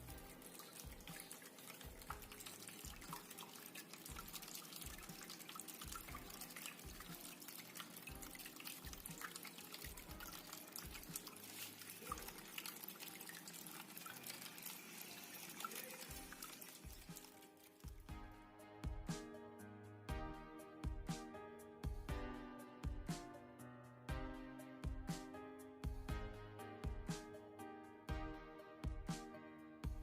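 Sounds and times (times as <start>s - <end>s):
water trickling: 0.0s - 18.0s
small water drips: 0.0s - 18.1s.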